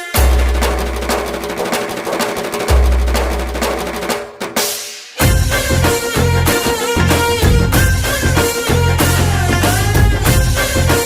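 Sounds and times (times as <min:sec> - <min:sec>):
upbeat song with heavy bass: 0:05.2 - 0:11.0.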